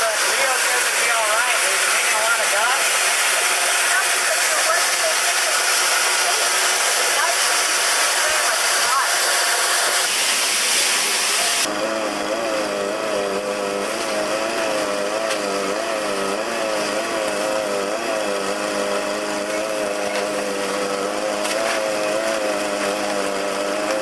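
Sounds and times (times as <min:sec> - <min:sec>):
machine drone: 0:00.0 - 0:24.0
compressed air hissing: 0:02.8 - 0:11.7.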